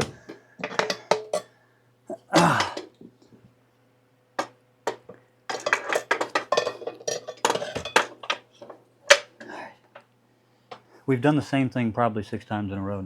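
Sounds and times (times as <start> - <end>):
metal parts clinking and knocking: 0.0 - 1.5, 4.4 - 10.0.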